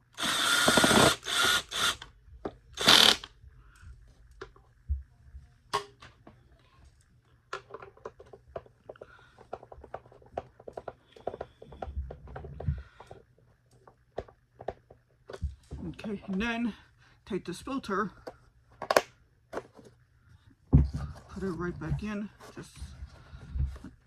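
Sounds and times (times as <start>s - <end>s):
cordless drill driving screws: 0.2s - 2.1s, 2.8s - 3.3s.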